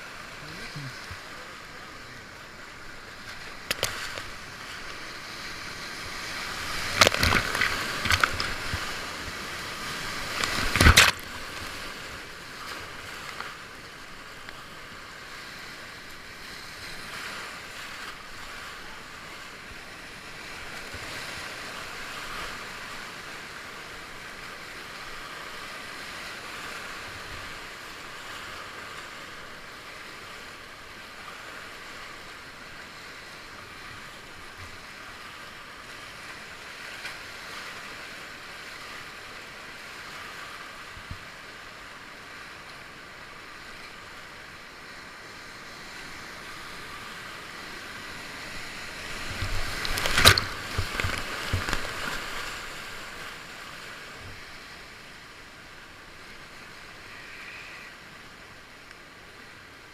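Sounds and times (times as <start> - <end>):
whitewater rapids rushing: 0.0 - 32.8, 33.5 - 59.9
sharp water splashes: 3.4 - 11.8, 48.7 - 52.8.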